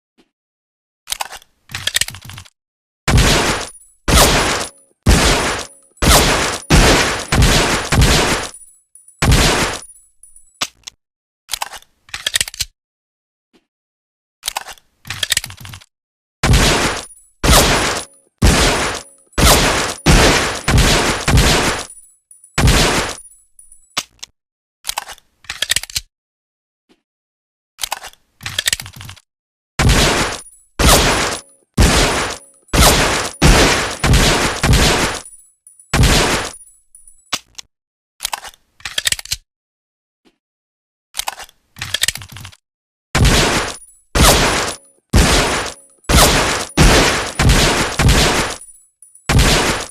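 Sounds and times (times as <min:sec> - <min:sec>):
pistol metallic clicks and rattles: 0:01.1 - 0:02.5, 0:05.6 - 0:12.7, 0:14.4 - 0:15.9, 0:24.9 - 0:26.1, 0:27.8 - 0:29.2, 0:32.3 - 0:39.4, 0:41.2 - 0:42.6
pistol shots with echo: 0:03.1 - 0:08.6, 0:16.5 - 0:21.9, 0:29.9 - 0:35.3, 0:43.2 - 0:48.7, 0:49.3 - 0:49.9.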